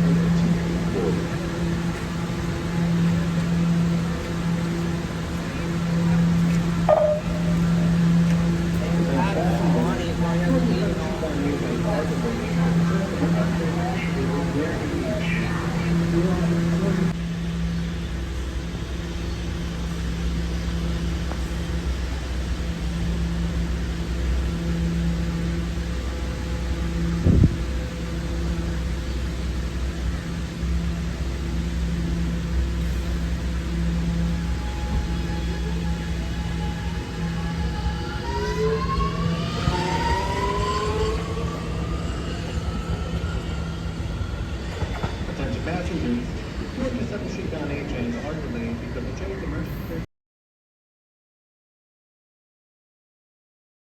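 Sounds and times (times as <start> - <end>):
constant droning tone: 0.0 - 49.6
steady low hum: 0.0 - 49.6
subway train rumble: 0.0 - 50.1.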